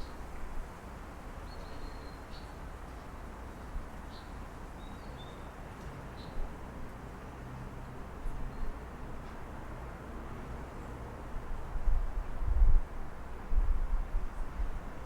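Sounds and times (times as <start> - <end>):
distant city traffic hum: 2.6 - 13.5.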